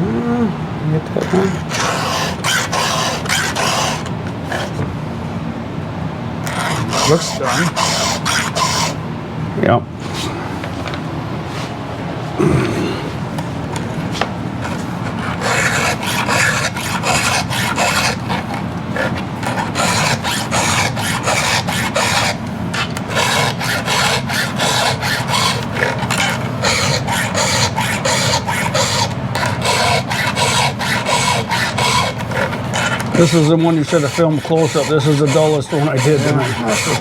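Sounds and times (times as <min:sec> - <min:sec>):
file rasping on chainsaw chain: 0:01.3 - 0:04.7, 0:06.5 - 0:09.0, 0:15.1 - 0:37.0.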